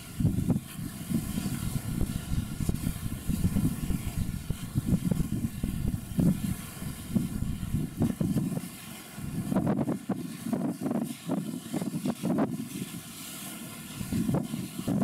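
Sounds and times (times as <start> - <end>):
faint steady hum: 0.0 - 10.4
wind buffeting microphone: 0.0 - 15.0.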